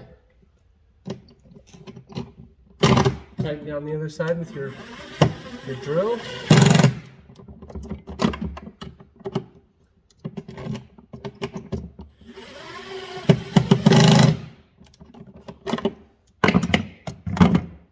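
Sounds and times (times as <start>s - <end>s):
drill driving nuts: 4.2s - 7.2s, 12.2s - 14.6s.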